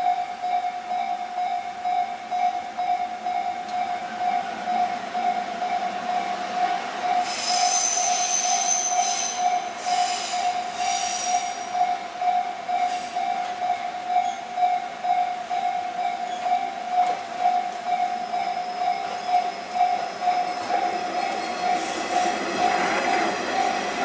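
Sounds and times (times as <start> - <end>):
level crossing bell ringing: 0.0 - 7.3, 12.3 - 21.9
high-pitched train squeal: 3.8 - 14.8, 16.2 - 24.0.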